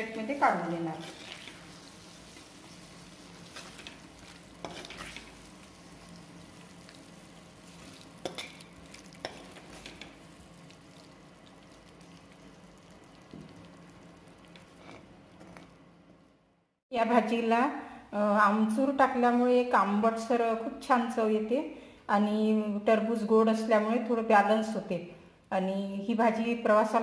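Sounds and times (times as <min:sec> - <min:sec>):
faint sizzle from pan: 0:00.0 - 0:15.9
spoon scraping and knocking pan: 0:03.4 - 0:05.4, 0:07.7 - 0:10.2.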